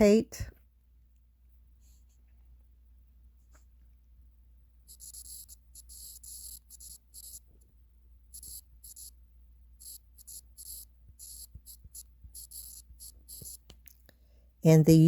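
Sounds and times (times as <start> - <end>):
pen scratching on paper: 4.9 - 7.4, 8.3 - 9.1, 9.8 - 13.7.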